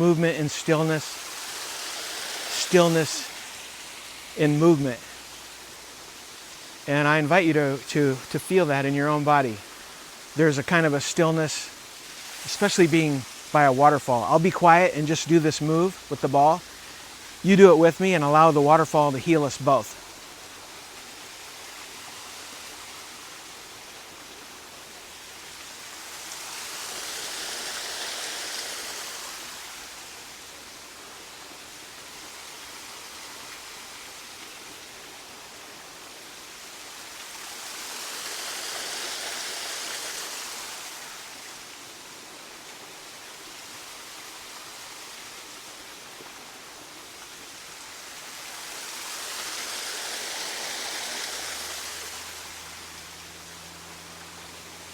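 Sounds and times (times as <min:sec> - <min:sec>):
waterfall rushing: 0:00.0 - 0:24.1, 0:47.3 - 0:54.7.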